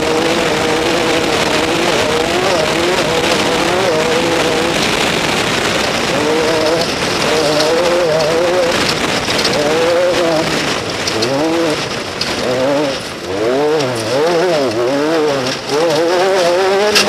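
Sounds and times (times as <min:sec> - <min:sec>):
racing engine revving: 0:00.0 - 0:17.0
steady hiss: 0:00.0 - 0:17.0.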